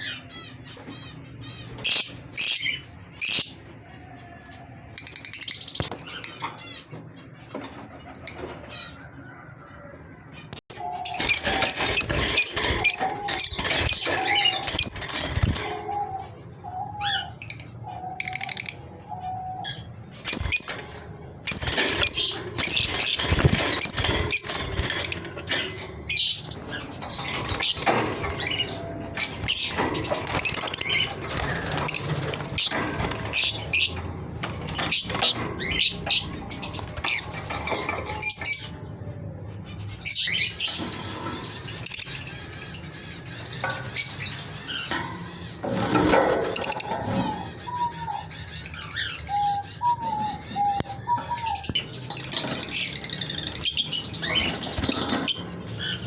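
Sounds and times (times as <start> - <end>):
small birds chirping: 0.0 - 56.0.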